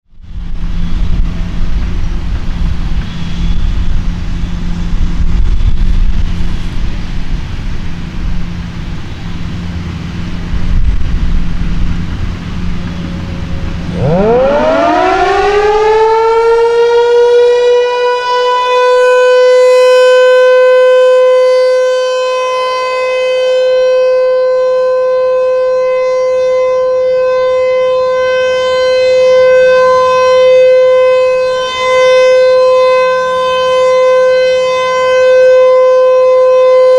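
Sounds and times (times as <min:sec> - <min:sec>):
low rumbling background noise: 0:00.1 - 0:17.9
outdoor warning siren winding up: 0:00.2 - 0:36.9.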